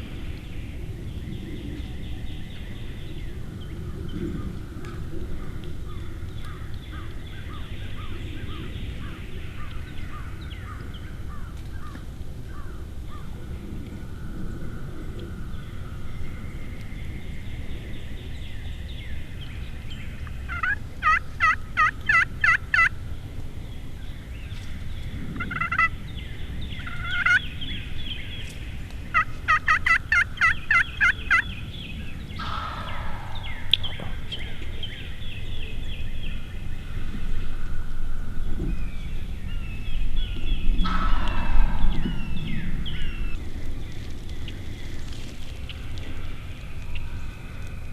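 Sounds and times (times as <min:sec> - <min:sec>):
songbirds chirping: 0:00.0 - 0:47.9
turkey gobbling: 0:20.5 - 0:22.9, 0:25.4 - 0:25.9, 0:26.8 - 0:27.4, 0:29.1 - 0:31.4, 0:32.4 - 0:34.8, 0:40.8 - 0:43.4
turkey yelps: 0:20.5 - 0:22.9, 0:25.4 - 0:25.9, 0:26.8 - 0:27.4, 0:29.1 - 0:31.4.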